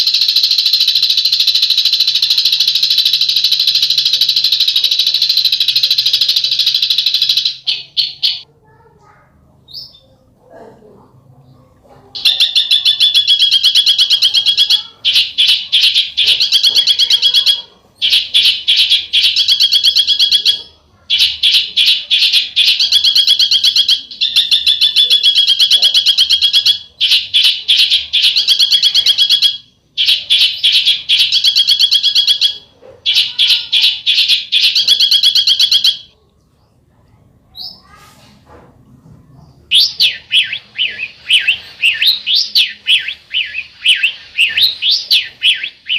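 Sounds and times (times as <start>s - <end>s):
bird rattling trills: 0.0s - 8.4s, 12.1s - 36.1s, 39.7s - 45.9s
bird sweeping chirps: 39.7s - 45.9s.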